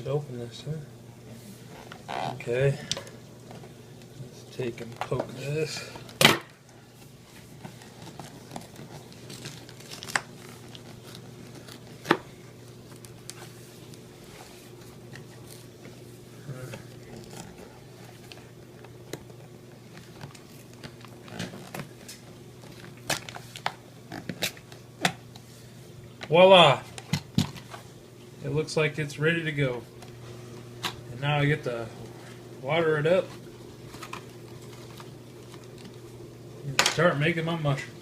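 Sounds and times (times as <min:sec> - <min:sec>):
faint steady hum: 0:00.0 - 0:38.0
packaging crinkling and tearing: 0:07.4 - 0:16.0, 0:16.6 - 0:24.8, 0:33.8 - 0:36.1.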